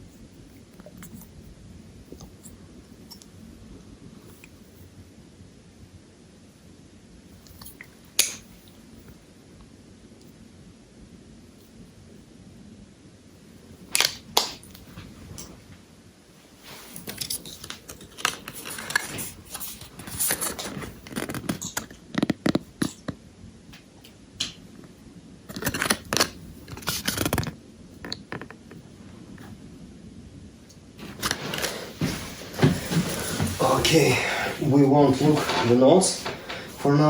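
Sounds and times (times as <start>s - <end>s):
packaging rustling: 16.7s - 22.4s.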